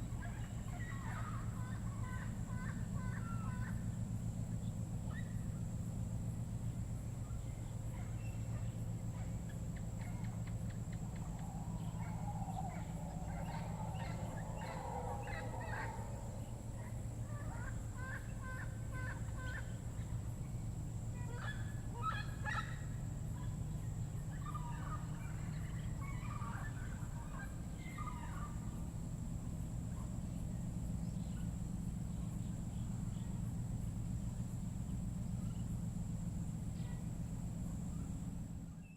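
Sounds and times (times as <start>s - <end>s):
steady low hum: 0.0s - 38.9s
chattering bird calls: 7.3s - 20.3s.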